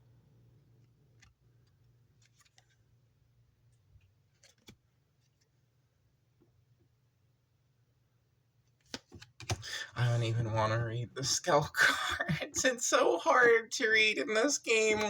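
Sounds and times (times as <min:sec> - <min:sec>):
trading cards clicking: 0:04.3 - 0:04.8
low steady hum: 0:09.6 - 0:13.4.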